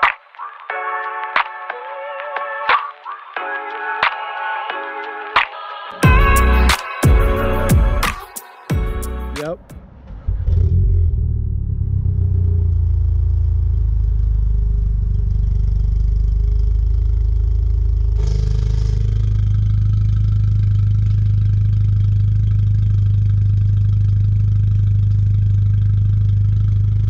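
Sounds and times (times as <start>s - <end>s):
engine humming: 8.8s - 27.0s.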